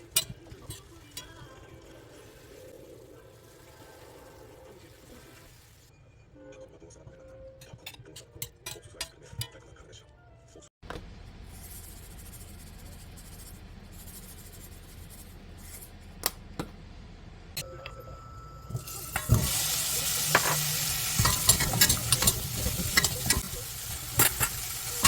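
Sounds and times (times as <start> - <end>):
dishes and utensils clinking: 0.0 - 1.6, 7.6 - 9.6, 18.7 - 25.0
food sizzling in a pan: 18.8 - 25.0.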